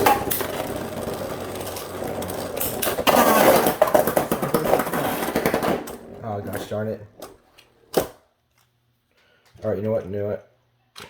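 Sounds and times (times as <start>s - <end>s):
spinning tops whirring and scraping: 0.0s - 6.0s.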